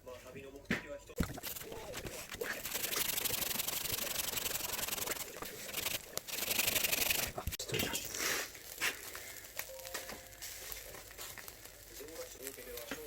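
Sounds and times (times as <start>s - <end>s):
gritty grinding with fine ticking: 1.2s - 7.6s.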